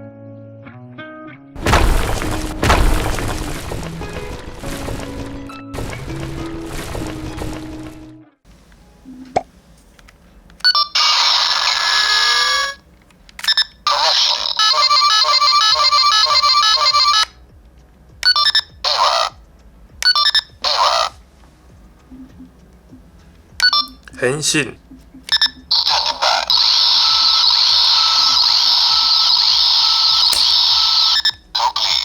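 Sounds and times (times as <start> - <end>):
repeating beeping tune: 14.5 - 17.3, 18.2 - 19.3, 20.1 - 21.1, 25.2 - 31.3
short beeps: 23.6 - 24.0
electronic blip: 25.2 - 31.2.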